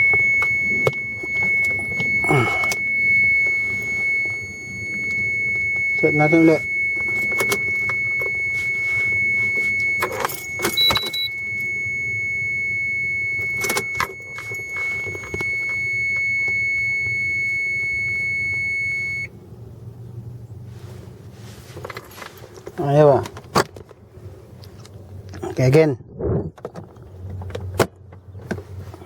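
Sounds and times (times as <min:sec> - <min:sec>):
electronic warning tone: 0:00.0 - 0:19.3
higher beep: 0:00.0 - 0:19.3.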